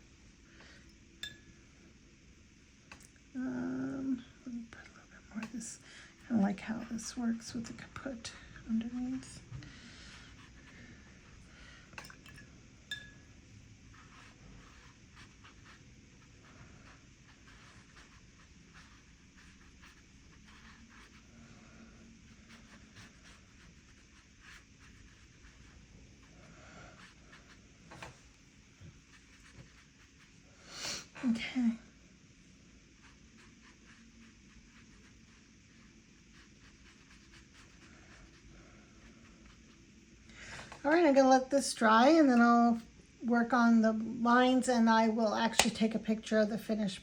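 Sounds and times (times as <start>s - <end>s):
low steady hiss: 0.0s - 47.0s
brush strokes on paper: 13.9s - 28.3s.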